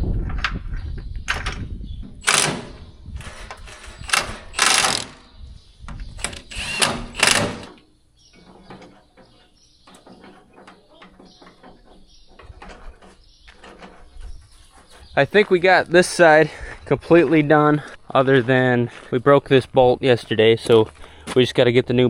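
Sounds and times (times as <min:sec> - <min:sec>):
loud metallic rattling: 0:02.2 - 0:05.3, 0:06.2 - 0:07.8
metal parts clanking and scraping: 0:02.2 - 0:05.3.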